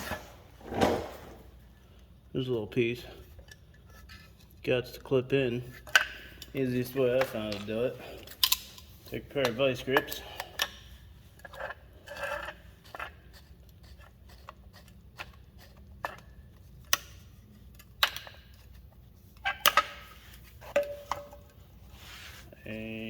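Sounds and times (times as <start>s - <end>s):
metallic clicks and clanks: 5.8s - 10.8s.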